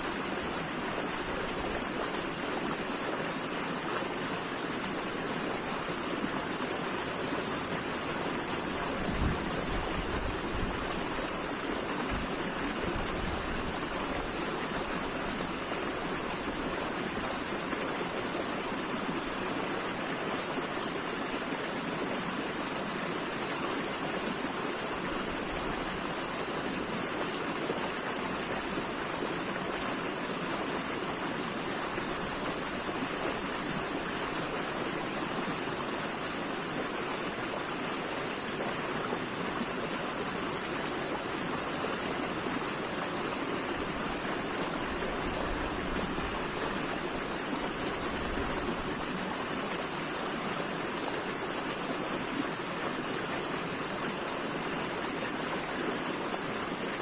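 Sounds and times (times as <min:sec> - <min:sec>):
running water rushing: 0:00.0 - 0:57.0.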